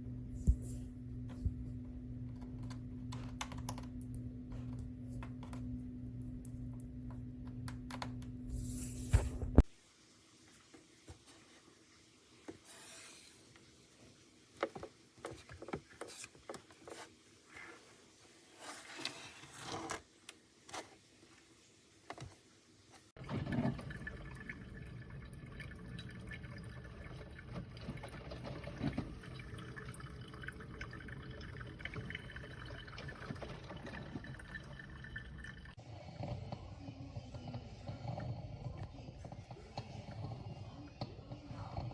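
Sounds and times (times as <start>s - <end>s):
coffee maker gurgling: 23.2s - 41.9s.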